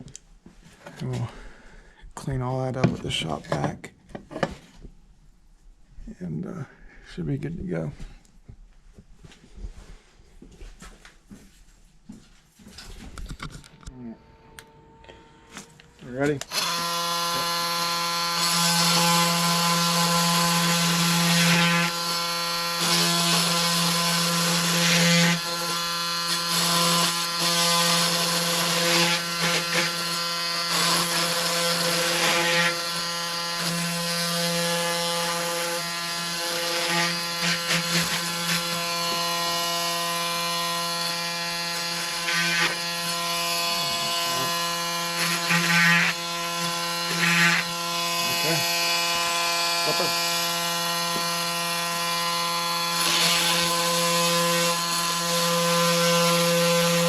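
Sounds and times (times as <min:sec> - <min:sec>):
power tool motor hum: 0:15.5 - 0:57.0.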